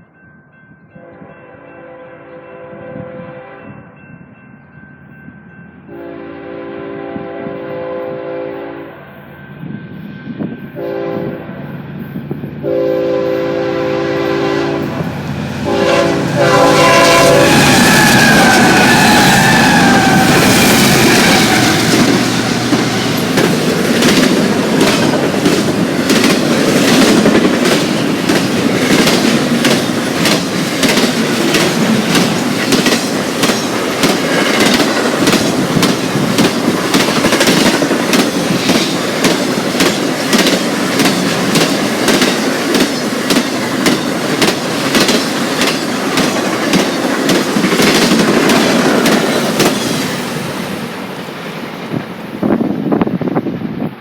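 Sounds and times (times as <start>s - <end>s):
locomotive air horn blasts: 1.0s - 3.8s, 5.9s - 9.1s, 10.8s - 11.5s, 12.6s - 22.2s
locomotives passing with rush: 6.4s - 54.0s
train wheels clickety-clack: 15.6s - 50.5s.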